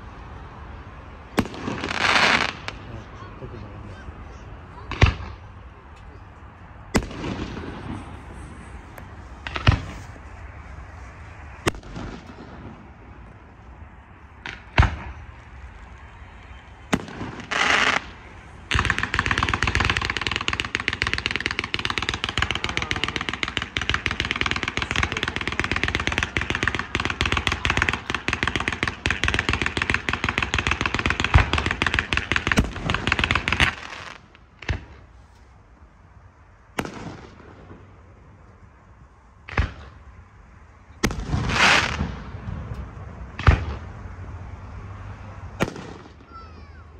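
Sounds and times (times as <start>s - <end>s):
firework bangs: 1.2s - 5.7s, 6.8s - 35.8s, 36.6s - 38.7s, 39.4s - 46.9s
firework hiss: 1.4s - 2.9s, 16.9s - 35.5s, 41.0s - 42.7s
rapid crackle of small pops: 18.7s - 35.0s.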